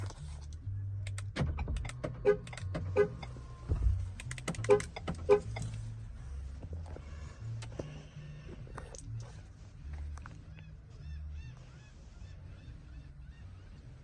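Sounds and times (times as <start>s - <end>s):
car horn two-tone honks: 2.2s - 3.3s, 4.6s - 5.6s
clicking: 4.2s - 5.0s.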